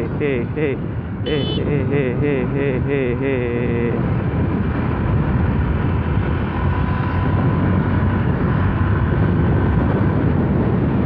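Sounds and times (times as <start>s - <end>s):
wind rushing over microphone: 0.0s - 11.0s
scooter engine running: 1.3s - 1.6s.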